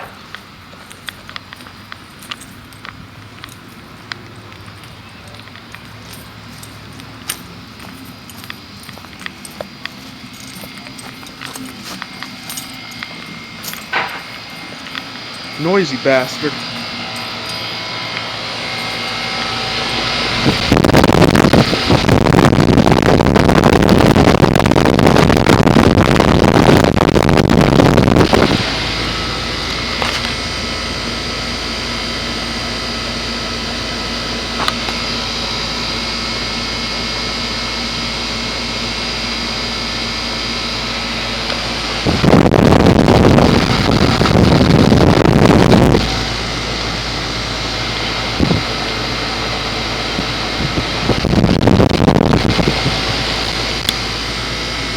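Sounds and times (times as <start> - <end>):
heat pump unit humming: 0.0 - 54.9
loud rushing noise: 9.8 - 31.2.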